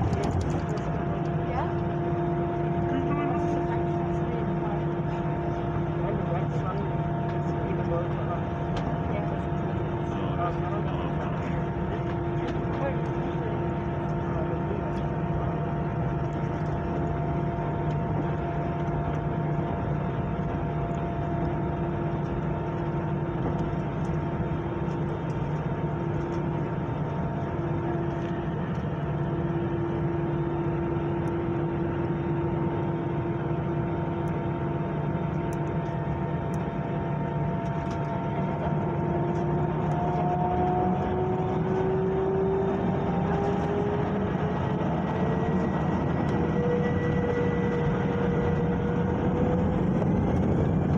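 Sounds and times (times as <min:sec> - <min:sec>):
jet engines rumbling and whining: 0:00.0 - 0:50.9.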